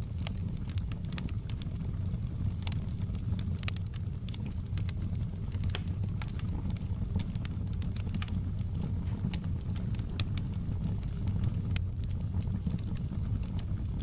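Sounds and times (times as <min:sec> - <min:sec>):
wood fire crackling and popping: 0:00.0 - 0:14.0.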